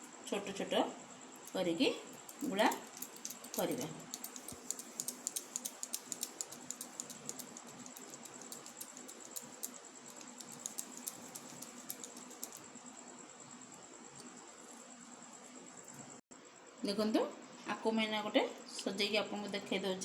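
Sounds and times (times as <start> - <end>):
faint high-pitched whine: 0.0 - 20.0
rapid light clicks and taps: 1.4 - 12.7.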